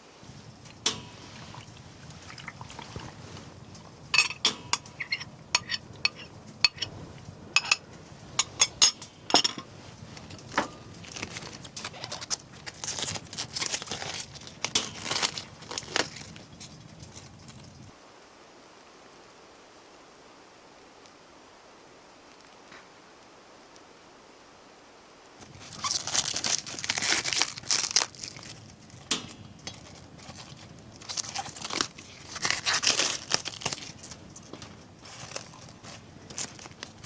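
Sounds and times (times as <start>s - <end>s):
rustling: 0.0s - 17.9s, 25.4s - 37.0s
metal cookware clinking: 0.8s - 1.8s, 4.1s - 6.9s, 7.6s - 12.2s, 26.4s - 31.8s.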